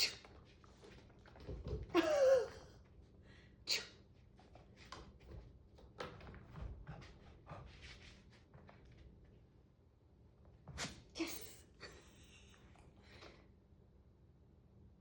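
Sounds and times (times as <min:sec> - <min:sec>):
dog sneezing: 0:03.7 - 0:04.0.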